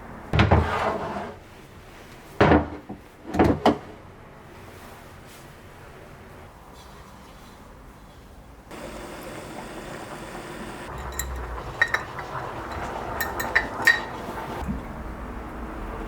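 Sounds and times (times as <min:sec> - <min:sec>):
water running: 0:08.7 - 0:15.0.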